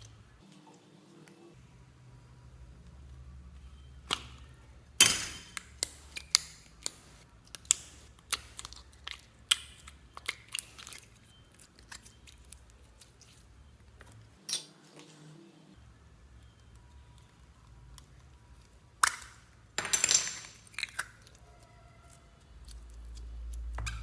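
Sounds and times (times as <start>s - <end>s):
slime clicking and popping: 5.2s - 11.1s.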